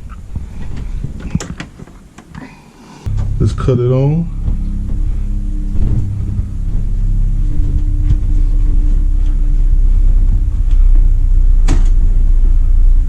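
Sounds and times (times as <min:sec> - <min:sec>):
steady tone: 0:03.0 - 0:13.0
computer fans humming: 0:03.1 - 0:12.9.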